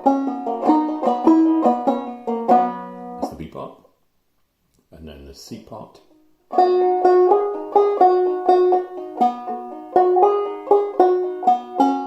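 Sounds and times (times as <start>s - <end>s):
banjo plucking a jig melody: 0.0s - 3.5s, 6.1s - 12.0s.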